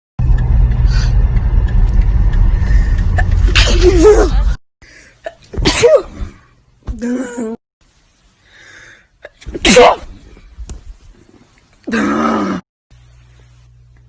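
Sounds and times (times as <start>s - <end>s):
loud steady low rumble: 0.2s - 4.6s
person sneezing: 5.6s - 6.4s, 9.2s - 10.1s.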